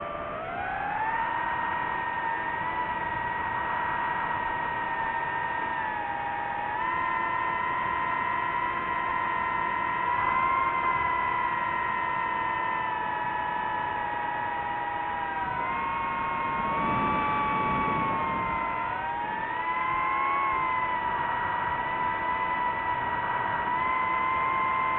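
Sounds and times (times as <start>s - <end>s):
drone propellers whining: 0.0s - 24.9s.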